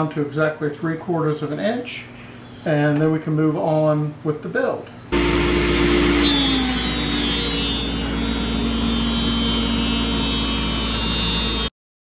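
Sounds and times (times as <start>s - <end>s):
power tool milling wood: 5.2s - 11.7s.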